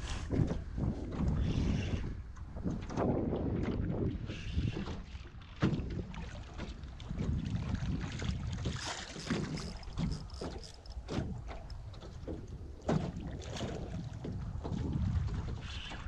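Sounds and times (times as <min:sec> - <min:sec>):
wind buffeting microphone: 0:00.0 - 0:16.0
gear knocking in a boat: 0:04.6 - 0:15.6.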